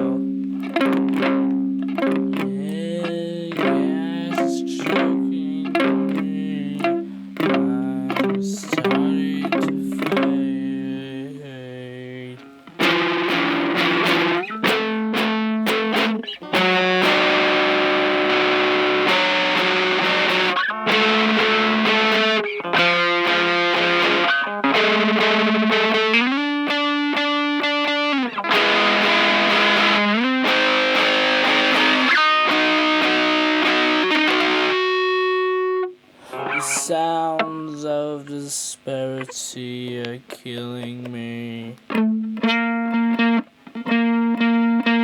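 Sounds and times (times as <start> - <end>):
distorted electric guitar chords: 0.0 - 38.3, 39.2 - 45.0.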